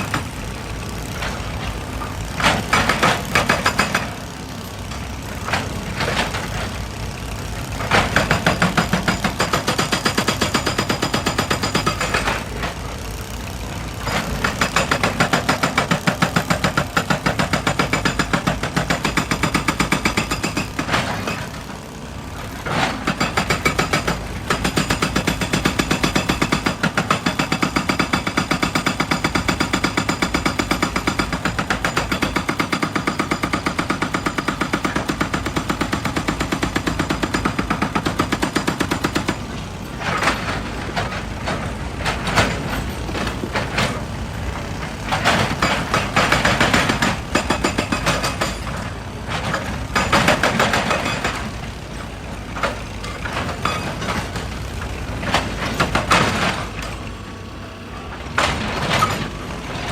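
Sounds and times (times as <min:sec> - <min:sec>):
diesel engine running: 0:00.0 - 0:09.6, 0:35.0 - 0:59.9
hydraulic rock breaker hammering: 0:00.0 - 0:59.9.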